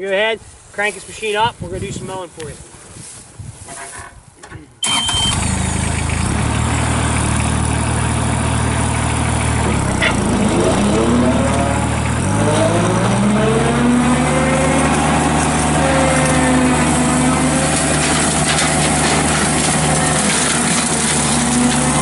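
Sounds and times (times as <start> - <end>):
skid steer engine starting and revving: 4.8 - 22.0.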